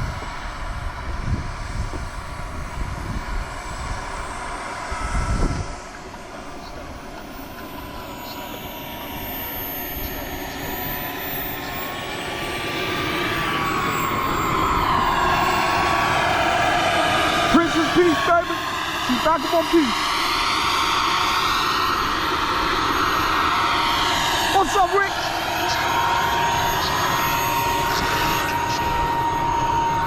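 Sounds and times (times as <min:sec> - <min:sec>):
wind buffeting microphone: 0:00.0 - 0:08.1, 0:09.8 - 0:19.3
turbine engine whining: 0:00.0 - 0:30.0.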